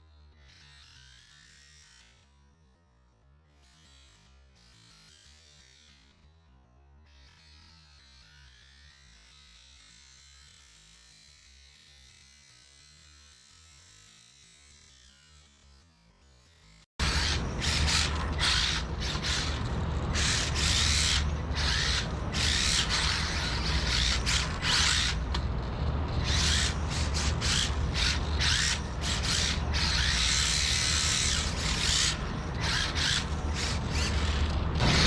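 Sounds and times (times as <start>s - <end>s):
rc car motor whirring: 0.0s - 2.3s, 3.7s - 6.2s, 7.1s - 35.0s
steady low hum: 17.0s - 35.0s.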